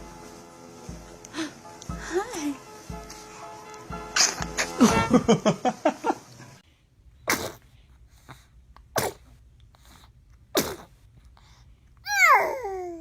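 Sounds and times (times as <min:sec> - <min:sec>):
baby sneezing: 0:07.2 - 0:07.7, 0:08.9 - 0:09.4, 0:10.5 - 0:11.0
baby whining cry: 0:12.0 - 0:13.0.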